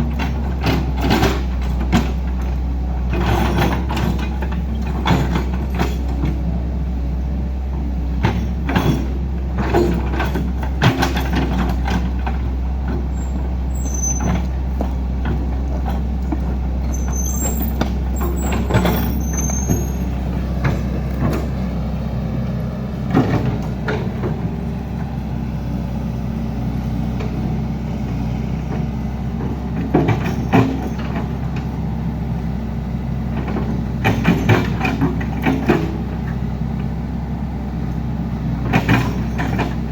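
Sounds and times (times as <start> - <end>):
machinery knocks and clanks: 0.0 - 6.5, 7.6 - 37.0, 38.5 - 39.9
diesel engine running: 0.0 - 39.9
high squeals: 13.2 - 14.5, 16.9 - 20.2.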